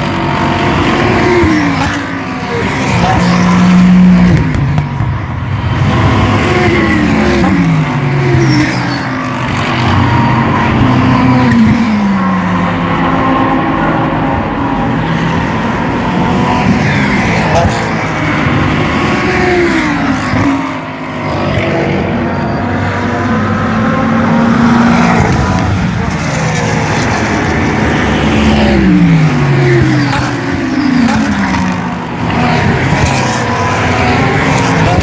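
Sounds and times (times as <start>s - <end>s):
race car engines at high revs: 0.0s - 35.0s.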